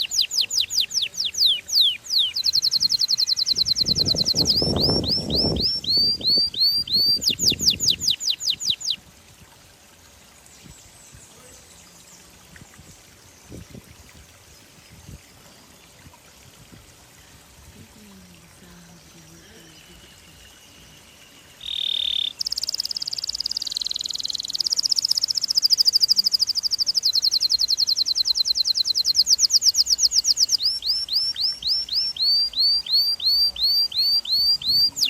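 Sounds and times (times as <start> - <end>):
songbird singing rapid trills: 0.0 - 9.0, 17.9 - 35.0
faint background hiss: 0.0 - 35.0.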